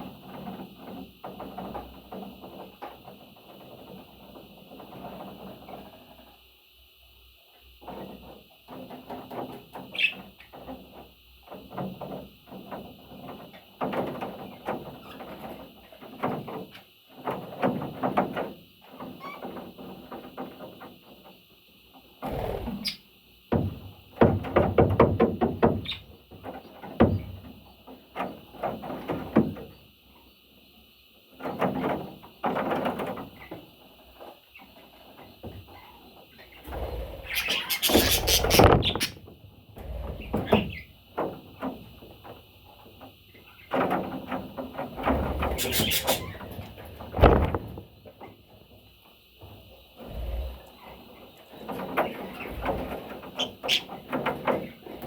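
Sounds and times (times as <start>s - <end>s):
parrots calling and chattering: 22.2s - 23.0s, 35.8s - 41.0s, 45.1s - 47.1s, 53.4s - 54.0s
steady high hiss: 36.0s - 53.9s.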